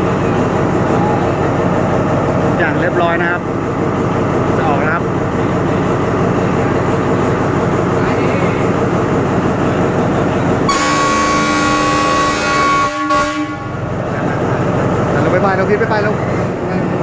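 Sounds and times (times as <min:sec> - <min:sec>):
train horn blast: 0:10.7 - 0:13.8.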